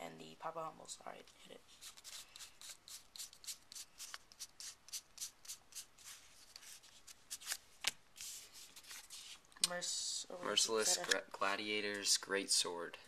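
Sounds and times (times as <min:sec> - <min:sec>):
trading cards rustling: 0:01.7 - 0:09.4.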